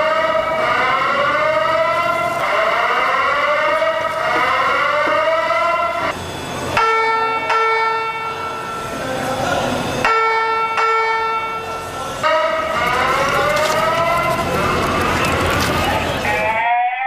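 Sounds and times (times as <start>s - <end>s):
rising whoop alarm tone: 0.0s - 6.2s
fire alarm bell tone: 0.0s - 14.8s.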